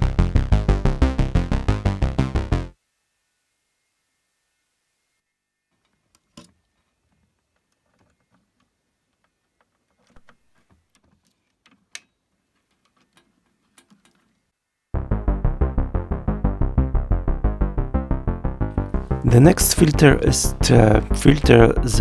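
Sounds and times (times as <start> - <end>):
synthesizer low repeating note pattern: 0.0 - 2.7, 15.0 - 22.0.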